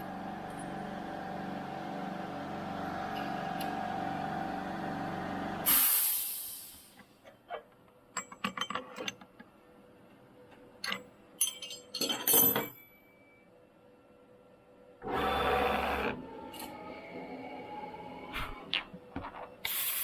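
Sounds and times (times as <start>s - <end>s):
metallic clicks and clinks: 10.8s - 12.8s.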